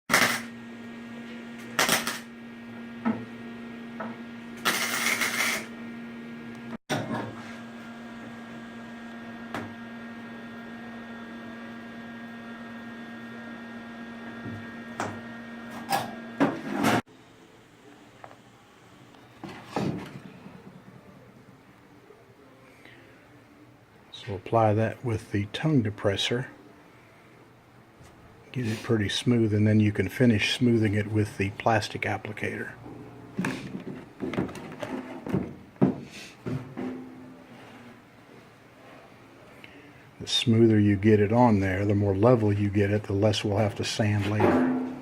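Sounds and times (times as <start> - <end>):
machine hum: 0.1 - 24.5.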